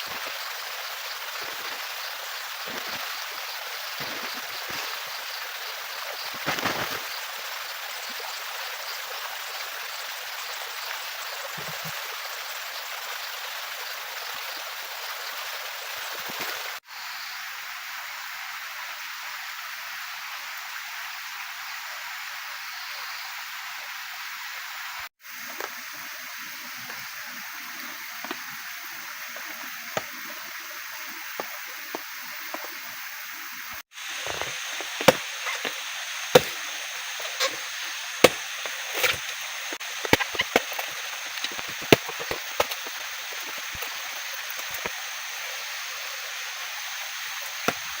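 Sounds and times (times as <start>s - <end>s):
steady hiss: 0.0s - 20.6s, 22.5s - 48.0s
sharp chopping knocks: 34.3s - 35.8s, 36.4s - 39.3s.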